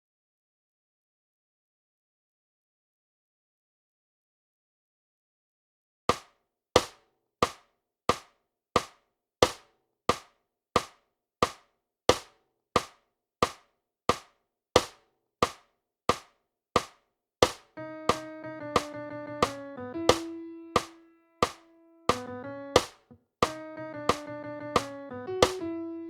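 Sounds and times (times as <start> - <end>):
pitched music: 17.8 - 25.7.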